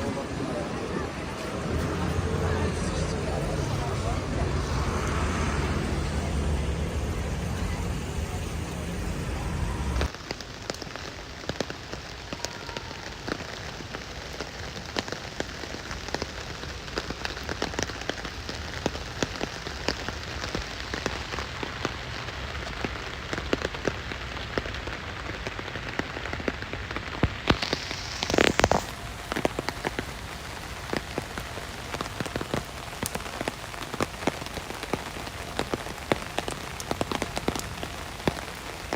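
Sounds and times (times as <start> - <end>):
low rumble: 0.0 - 10.1
brief rush of rain: 0.0 - 38.9
rain pattering on hard surfaces: 0.0 - 38.9.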